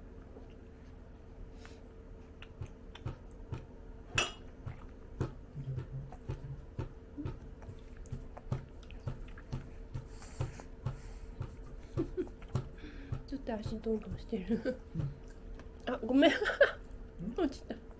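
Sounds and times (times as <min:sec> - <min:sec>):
toddler chewing food: 0:00.1 - 0:13.0.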